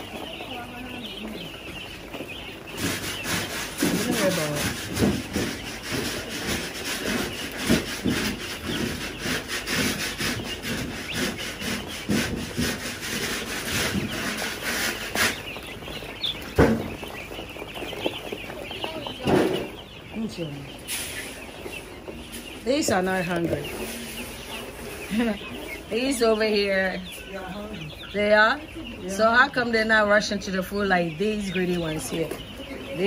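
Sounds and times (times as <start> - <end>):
chickens pecking and scratching: 0.0 - 33.0.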